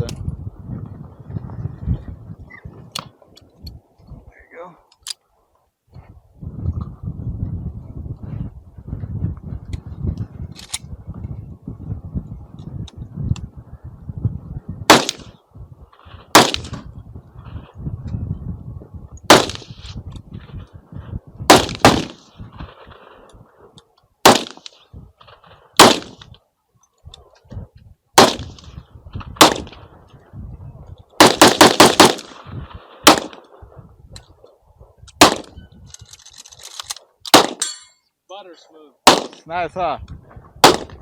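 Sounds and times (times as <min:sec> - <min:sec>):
gunshots: 0:14.9 - 0:15.4, 0:16.3 - 0:16.8, 0:19.3 - 0:19.8, 0:21.5 - 0:22.2, 0:24.2 - 0:24.8, 0:25.8 - 0:26.2, 0:28.2 - 0:28.7, 0:29.4 - 0:29.8, 0:31.2 - 0:32.4, 0:33.0 - 0:33.4, 0:35.2 - 0:35.6, 0:37.3 - 0:37.8, 0:39.0 - 0:39.5, 0:40.6 - 0:41.0.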